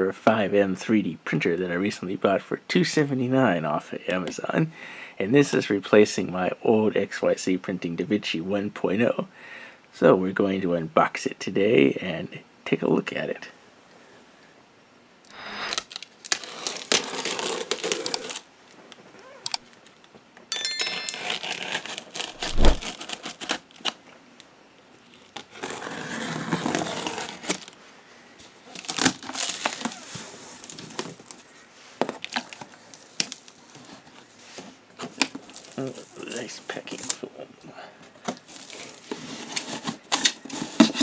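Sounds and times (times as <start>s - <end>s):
packing material crinkling: 15.7s - 18.5s, 21.1s - 24.0s, 25.0s - 27.8s, 28.7s - 31.4s, 35.1s - 37.2s, 38.4s - 39.8s
tape tearing: 15.7s - 18.5s, 21.2s - 24.0s, 25.1s - 27.8s, 28.7s - 31.2s.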